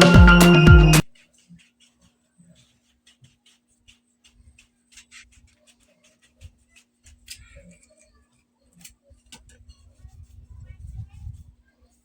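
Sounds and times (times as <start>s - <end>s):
hands handling pipe and tape: 1.2s - 7.9s.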